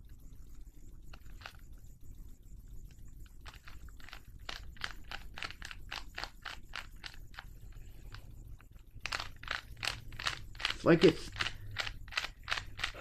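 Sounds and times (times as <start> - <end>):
puzzle cube clicking and scraping: 1.1 - 1.6, 3.2 - 13.0.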